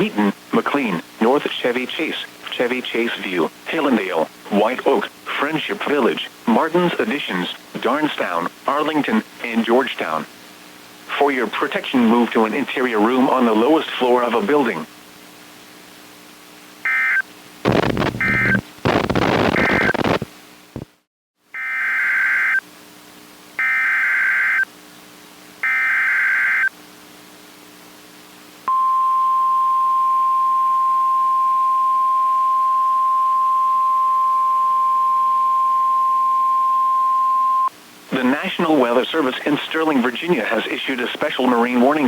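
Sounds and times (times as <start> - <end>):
steady alarm tone: 16.9 - 18.6, 23.6 - 24.6, 25.6 - 26.7
screechy digital data bursts: 16.9 - 20.2, 25.6 - 26.7.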